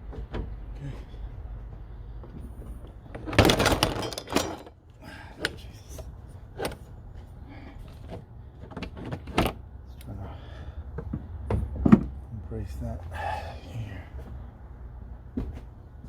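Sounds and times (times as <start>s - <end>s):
metal parts scraping: 3.2s - 4.8s
metal knocks and clinks: 3.3s - 4.8s.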